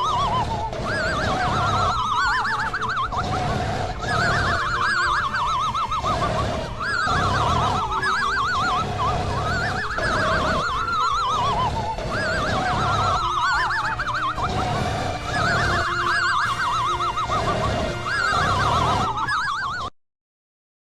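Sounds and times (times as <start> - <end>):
high quavering cry: 0.0 - 19.9.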